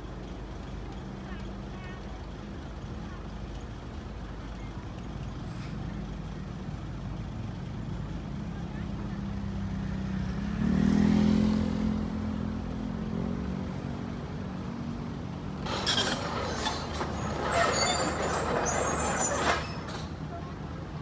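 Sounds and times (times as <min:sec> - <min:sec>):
excavator engine revving: 0:15.2 - 0:20.3.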